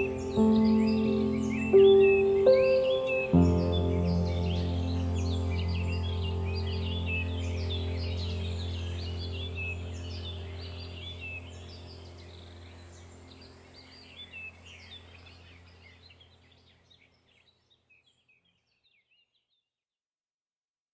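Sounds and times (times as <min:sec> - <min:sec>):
steady low hum: 0:00.0 - 0:16.4
small birds chirping and twittering: 0:00.0 - 0:19.7.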